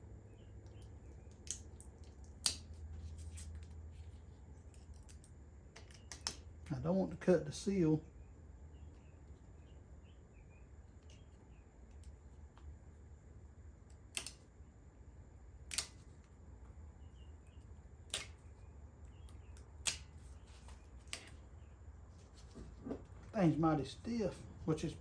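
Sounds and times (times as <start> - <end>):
faint low hum: 0.0 - 25.0
sharp metal clicks: 14.1 - 14.4, 15.7 - 16.1.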